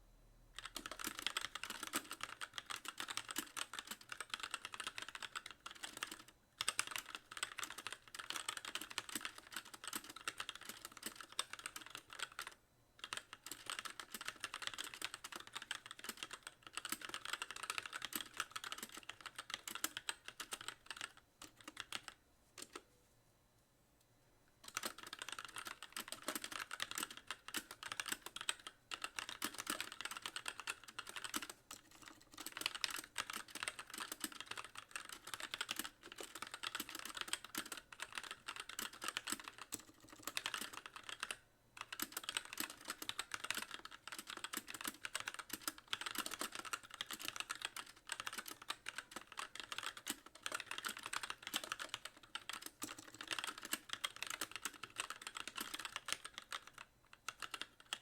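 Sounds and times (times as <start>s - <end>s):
mechanical keyboard typing: 0.6s - 22.8s, 24.6s - 58.0s.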